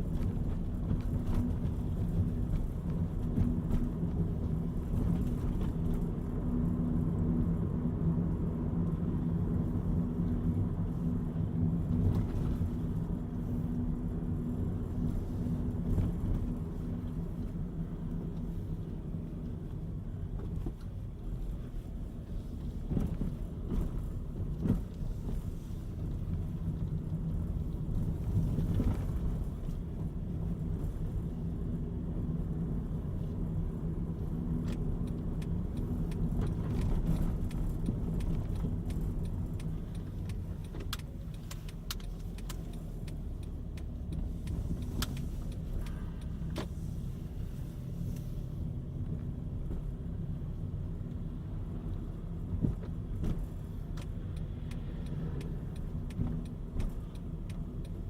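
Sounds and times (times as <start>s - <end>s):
car engine and tyre rumble: 0.0s - 58.0s
light clicks and rattles: 34.6s - 47.2s, 51.8s - 58.0s.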